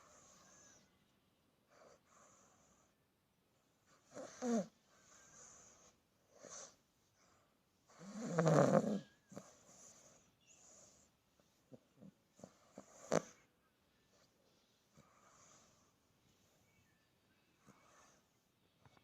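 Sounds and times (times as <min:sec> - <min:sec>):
puppy snoring: 0:03.9 - 0:06.8, 0:07.9 - 0:11.0, 0:11.7 - 0:13.5.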